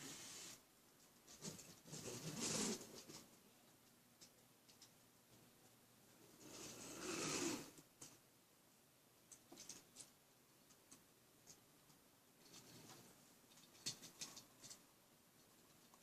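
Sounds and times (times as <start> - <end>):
faint small clicks and taps: 3.0 - 5.5, 9.2 - 16.0.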